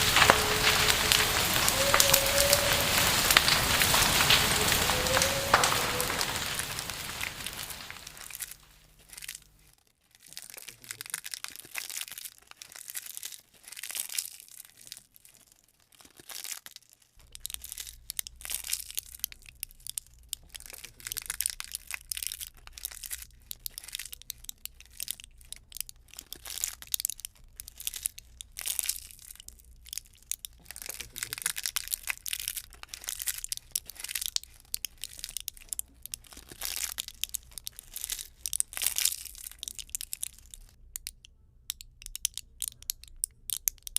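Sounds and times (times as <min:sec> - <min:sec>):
campfire crackling and popping: 0:00.0 - 0:09.6, 0:16.6 - 0:43.9.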